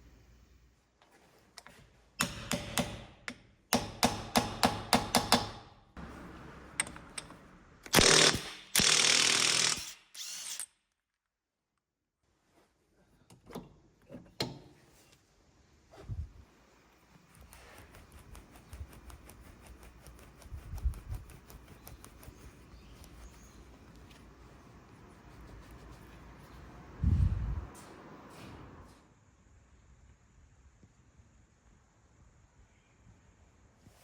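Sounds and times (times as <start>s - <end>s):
impact wrench hammering: 2.2s - 5.7s
rapid rattling tool strokes: 17.2s - 24.0s.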